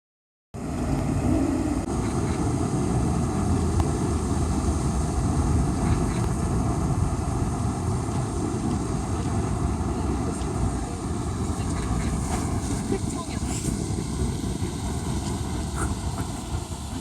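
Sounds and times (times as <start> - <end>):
low rumbling background noise: 0.6 - 17.0.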